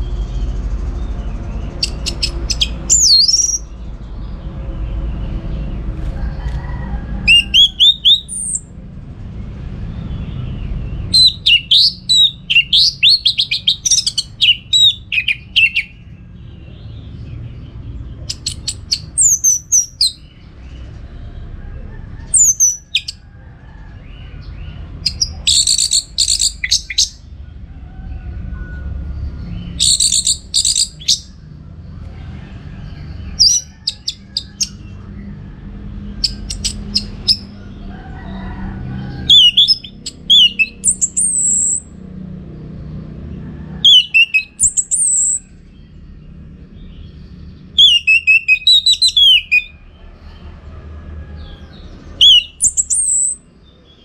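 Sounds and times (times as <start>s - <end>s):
thrush singing high whistles: 7.3s - 8.6s, 43.9s - 45.3s, 47.8s - 49.7s.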